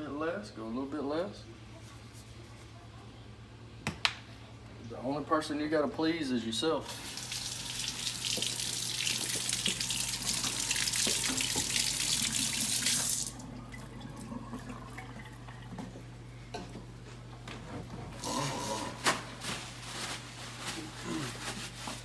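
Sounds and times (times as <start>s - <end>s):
tap water splashing into sink: 6.9s - 16.1s.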